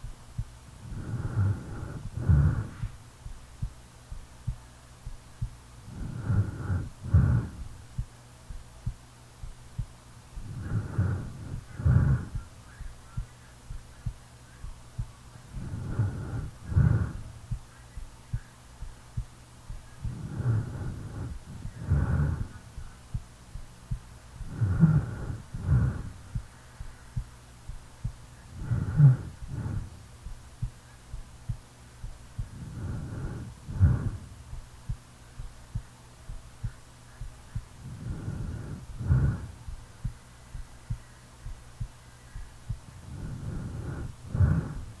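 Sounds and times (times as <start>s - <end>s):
snoring breaths: 0.0s - 3.0s, 5.8s - 7.9s, 10.4s - 12.9s, 15.4s - 17.6s, 19.7s - 23.0s, 23.9s - 26.6s, 28.4s - 30.8s, 32.0s - 35.9s, 37.6s - 41.0s, 42.4s - 45.0s
heartbeat thumping: 0.0s - 5.7s, 6.7s - 45.0s.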